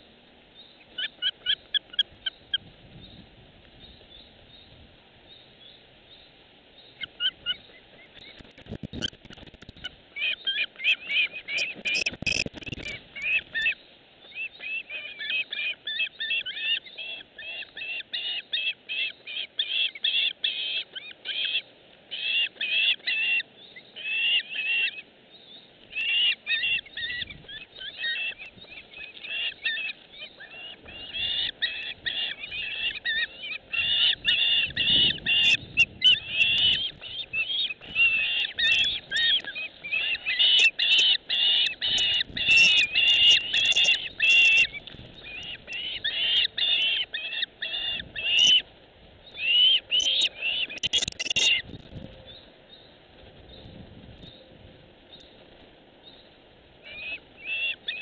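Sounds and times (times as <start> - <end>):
chorus of animal calls: 10.2 - 13.8, 14.4 - 25.1, 25.9 - 48.7, 49.3 - 52.4, 56.8 - 58.0.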